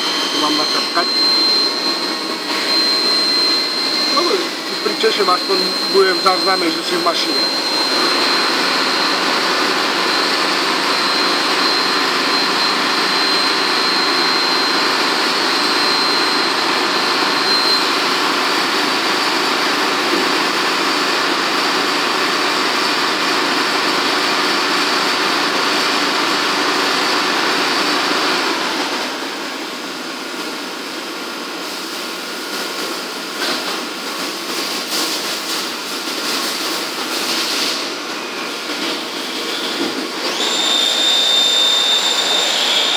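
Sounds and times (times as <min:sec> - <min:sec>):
thin high tone: 0:00.0 - 0:14.9
lathe machine whirring: 0:00.0 - 0:29.8, 0:36.9 - 0:42.9.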